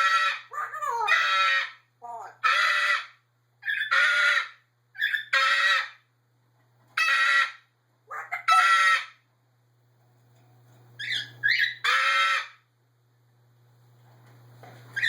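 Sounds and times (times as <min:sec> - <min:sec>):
parrot screeching: 0:00.0 - 0:06.1, 0:07.0 - 0:09.2, 0:11.0 - 0:12.7.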